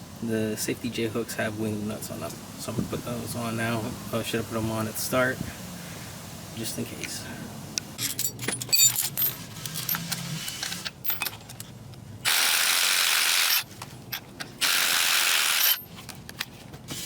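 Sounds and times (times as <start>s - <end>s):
impact wrench bursts: 12.2s - 15.9s.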